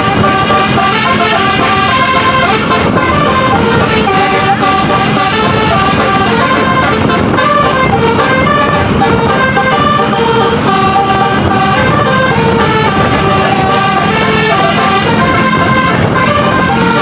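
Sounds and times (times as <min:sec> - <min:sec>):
engine and road noise: 0:00.0 - 0:17.0
musical air horns playing melody: 0:00.0 - 0:17.0.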